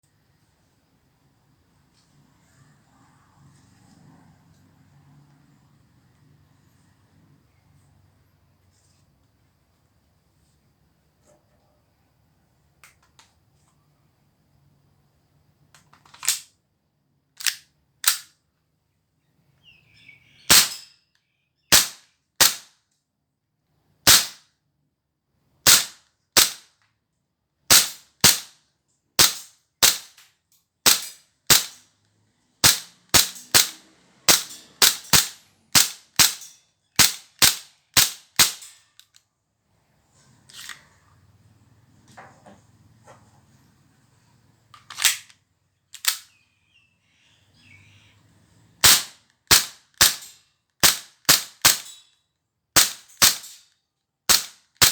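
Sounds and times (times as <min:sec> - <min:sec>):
airsoft pistol shots: 0:20.5 - 0:20.8, 0:21.7 - 0:22.7, 0:24.1 - 0:24.4, 0:25.7 - 0:26.6, 0:27.7 - 0:28.5, 0:29.2 - 0:30.1, 0:30.9 - 0:31.8, 0:32.6 - 0:36.4, 0:37.0 - 0:38.6, 0:48.8 - 0:51.9, 0:52.8 - 0:53.6, 0:54.3 - 0:54.9.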